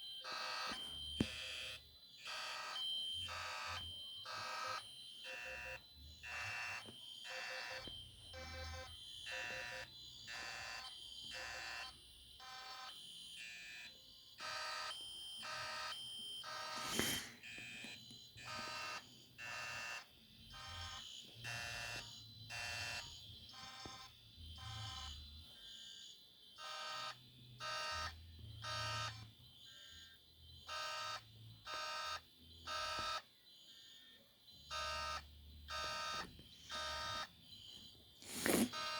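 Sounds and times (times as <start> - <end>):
fire alarm horns pulsing: 0.2 - 25.8, 34.6 - 38.9.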